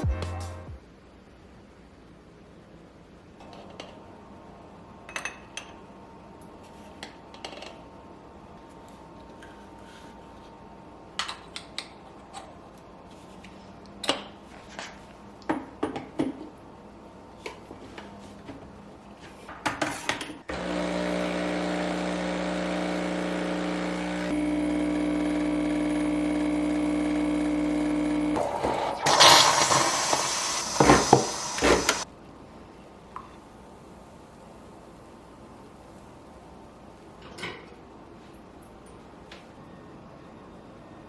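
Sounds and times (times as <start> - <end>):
espresso machine pump humming: 20.5 - 32.0.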